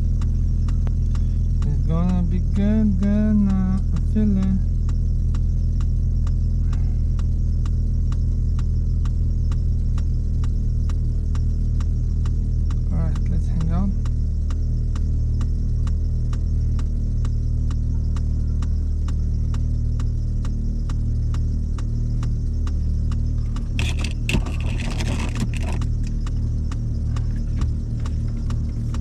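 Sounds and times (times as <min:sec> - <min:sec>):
light regular ticking: 0:00.0 - 0:29.0
motor humming: 0:22.9 - 0:29.0.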